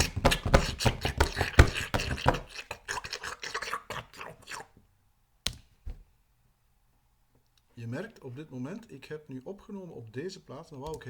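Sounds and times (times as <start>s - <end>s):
crunching chewing noises: 0.0s - 4.8s.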